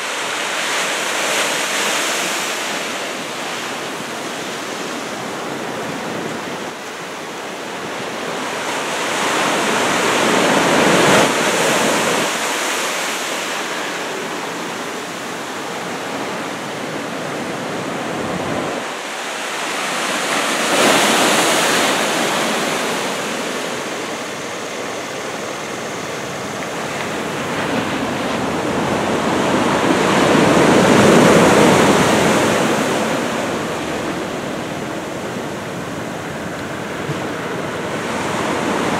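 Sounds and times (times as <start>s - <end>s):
ocean waves breaking on shore: 0.0s - 38.9s.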